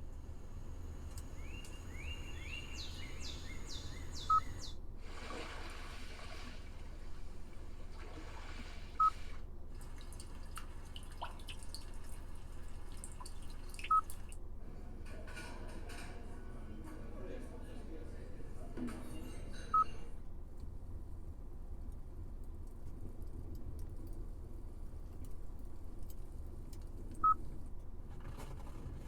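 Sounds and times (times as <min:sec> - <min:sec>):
steady low hum: 0:00.0 - 0:15.2
car warning chime beeps: 0:01.4 - 0:04.8, 0:09.0 - 0:09.2.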